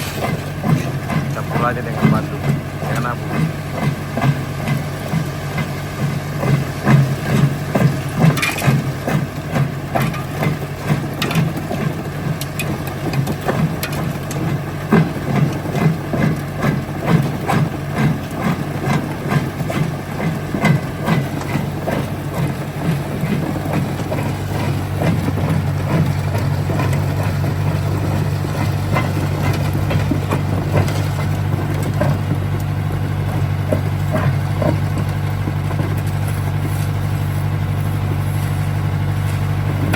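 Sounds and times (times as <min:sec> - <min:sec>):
crusher engine hum: 0:00.0 - 0:39.9
rock cracking and knocking: 0:20.6 - 0:37.0.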